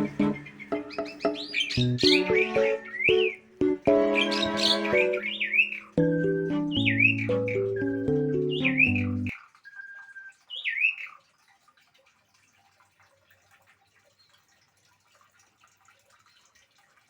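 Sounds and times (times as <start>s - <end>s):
bird squawking call: 4.0s - 9.3s
bird whistled note: 4.2s - 10.3s.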